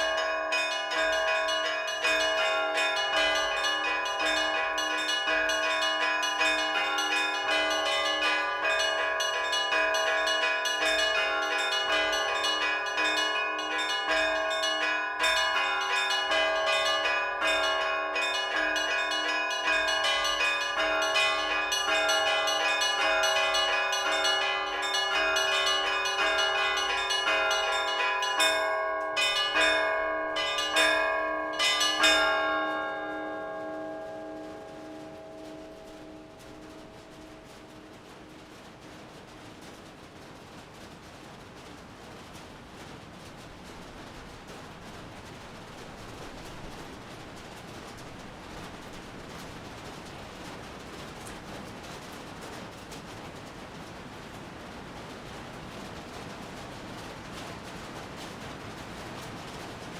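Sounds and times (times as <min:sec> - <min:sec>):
larger bells ringing: 0:00.0 - 0:38.8
rapid strikes on small bells: 0:00.0 - 0:39.6.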